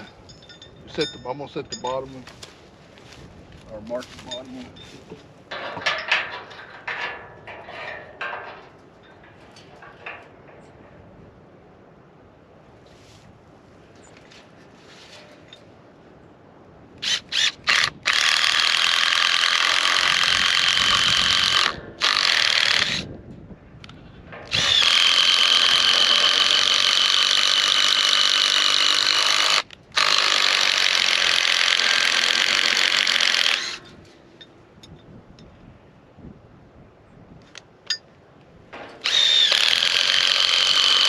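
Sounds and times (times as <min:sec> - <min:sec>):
power drill boring into wood: 0:17.0 - 0:23.1, 0:24.5 - 0:33.8, 0:39.0 - 0:41.0.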